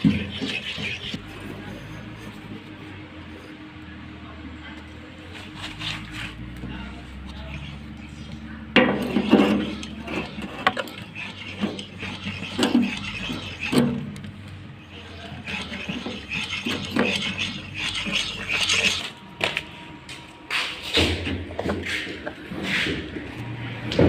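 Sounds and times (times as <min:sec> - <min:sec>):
scraping and clanking knocks: 0:00.0 - 0:02.6, 0:07.3 - 0:14.3, 0:15.2 - 0:19.2.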